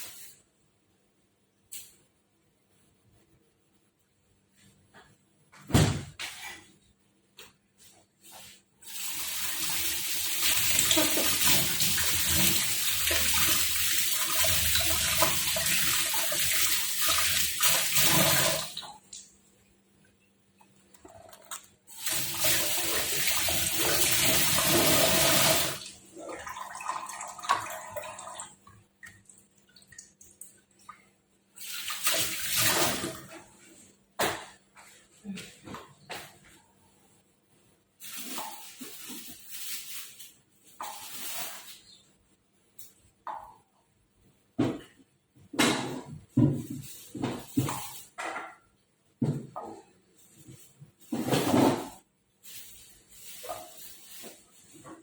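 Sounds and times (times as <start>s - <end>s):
water running from kitchen tap: 8.8s - 19.3s, 21.9s - 30.8s, 31.6s - 33.4s.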